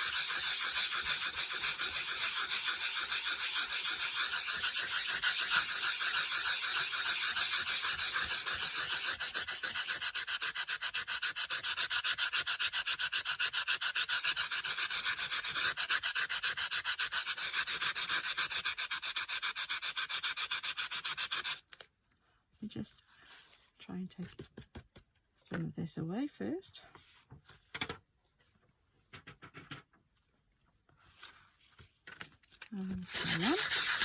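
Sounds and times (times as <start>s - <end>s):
sanding block scratching cardstock: 0.0s - 21.6s, 33.0s - 34.0s.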